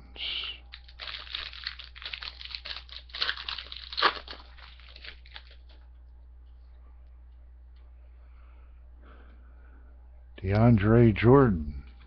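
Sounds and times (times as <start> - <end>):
foil wrapper tearing and crinkling: 0.7 - 5.8.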